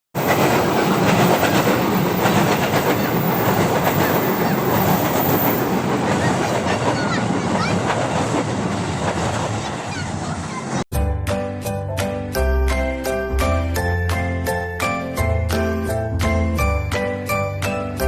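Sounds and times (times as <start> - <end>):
train wheels clattering: 0.2 - 10.4.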